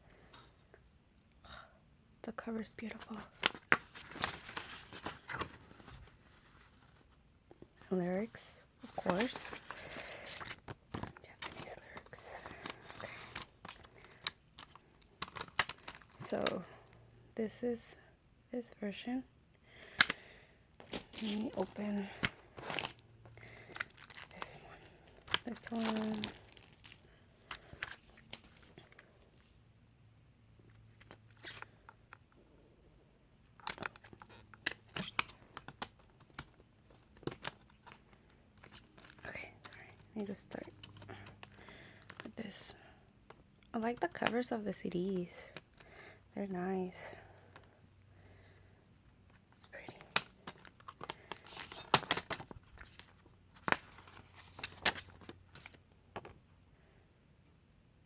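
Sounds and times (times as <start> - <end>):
paper rustling: 3.3 - 7.1, 8.8 - 16.3, 20.8 - 28.9, 49.8 - 56.3
plastic wrap crinkling and tearing: 8.8 - 16.2, 20.8 - 28.8, 50.1 - 55.8
packaging clicks: 9.0 - 16.3, 20.8 - 28.6
plastic cd case clicks: 19.9 - 20.2.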